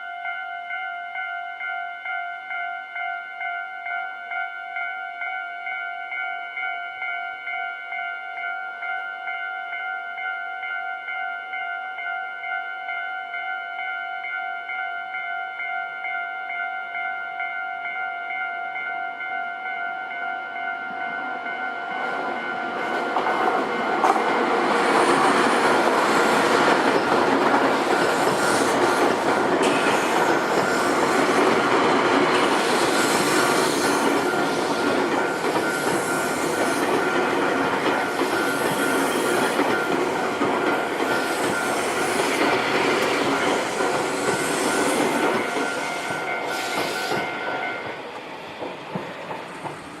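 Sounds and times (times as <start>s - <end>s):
electronic crossing warning bell: 0.0s - 48.0s
train rushing and rumbling: 20.9s - 50.0s.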